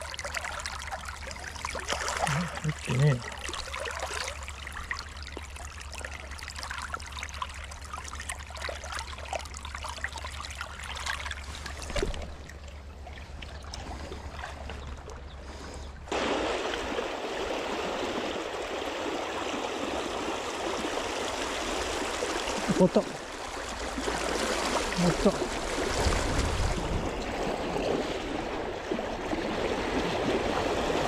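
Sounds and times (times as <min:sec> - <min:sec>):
small crackling splashes: 0:00.0 - 0:15.2, 0:16.1 - 0:30.4
river water flowing: 0:00.0 - 0:31.0.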